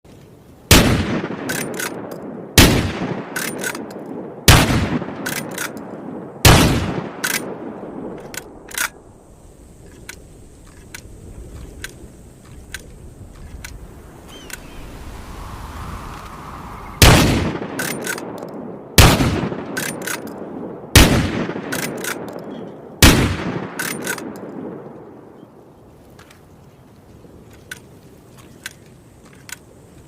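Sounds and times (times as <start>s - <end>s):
shotgun shots: 0.7s - 8.5s, 17.0s - 22.4s, 23.0s - 24.8s
shotgun lever clicks: 1.5s - 2.3s, 3.3s - 4.1s, 5.2s - 6.0s, 8.2s - 9.0s, 19.7s - 20.4s, 21.7s - 22.6s, 23.8s - 24.5s, 27.5s - 29.7s.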